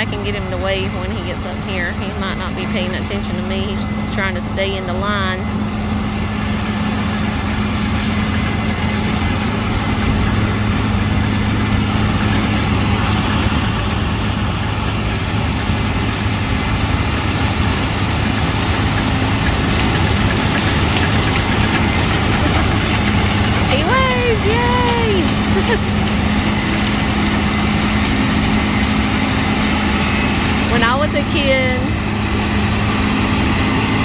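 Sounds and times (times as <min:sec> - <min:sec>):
combine harvester engine droning: 0:00.0 - 0:34.0.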